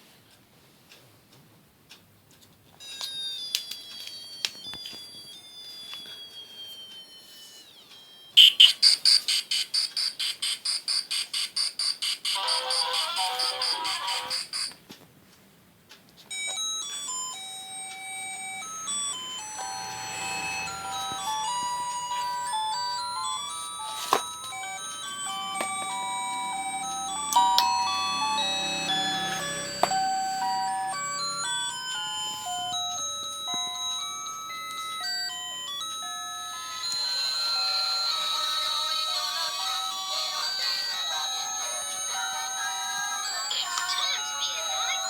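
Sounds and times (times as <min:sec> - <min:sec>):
thin high tone falling in pitch: 0:04.8 - 0:09.3, 0:16.9 - 0:38.1
fast pulsing beep tune: 0:08.3 - 0:12.8, 0:18.2 - 0:32.7.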